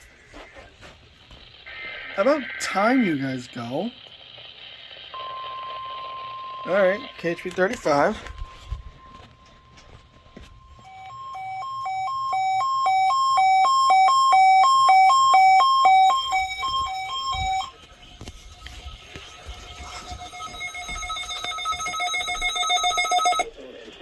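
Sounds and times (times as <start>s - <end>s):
alternating electronic alert tone: 5.2s - 23.5s.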